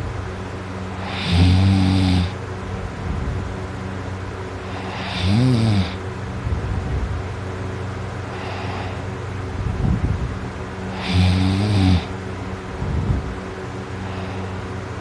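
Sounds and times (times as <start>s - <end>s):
person snoring loudly: 1.0s - 2.4s, 4.7s - 6.0s, 10.9s - 12.1s.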